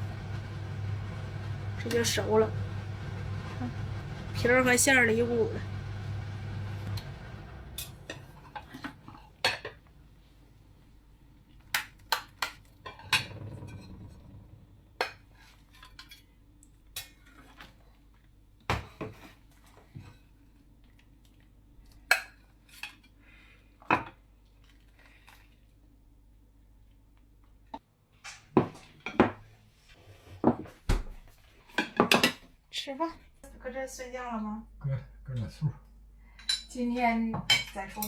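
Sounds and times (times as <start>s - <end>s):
dishes and utensils clinking: 36.3s - 36.8s.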